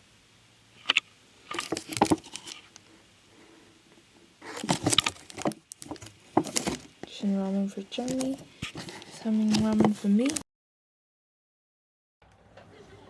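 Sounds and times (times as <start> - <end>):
snack packaging crinkling: 0.9 - 2.8, 4.4 - 7.1, 8.0 - 10.4.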